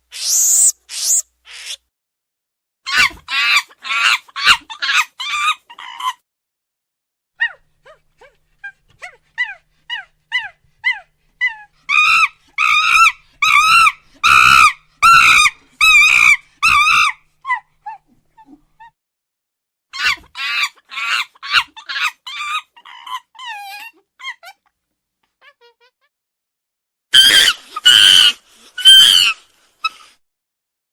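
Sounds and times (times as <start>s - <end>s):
monkey chirps and screeches: 0.0s - 1.8s, 9.0s - 17.2s, 27.2s - 30.0s.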